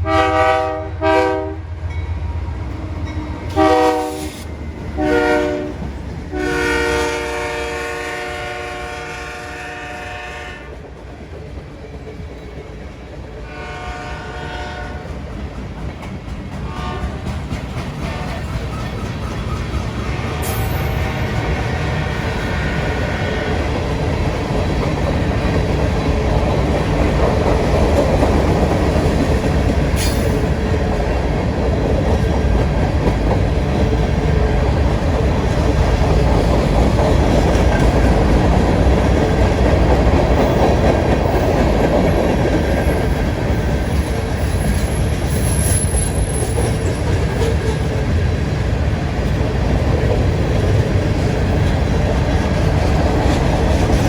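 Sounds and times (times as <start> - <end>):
train wheels rumbling on rails: 0.0 - 54.0.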